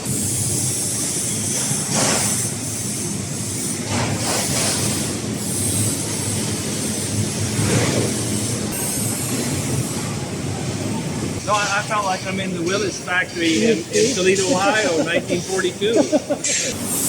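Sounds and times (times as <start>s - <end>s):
machinery low hum: 8.5s - 17.0s.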